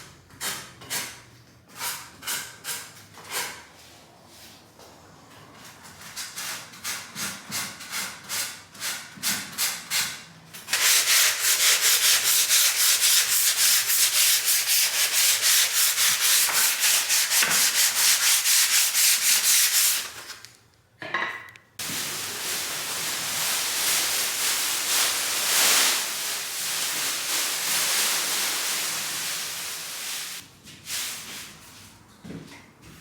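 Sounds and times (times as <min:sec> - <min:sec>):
sandpaper rubbing on wood: 0:10.7 - 0:20.4.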